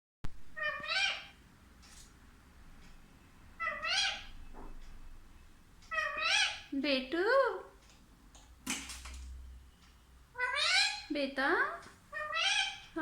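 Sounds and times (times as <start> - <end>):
parakeet meow-like calls: 0.5 - 1.4, 3.6 - 4.3, 5.9 - 6.7, 10.4 - 11.1, 12.1 - 13.0.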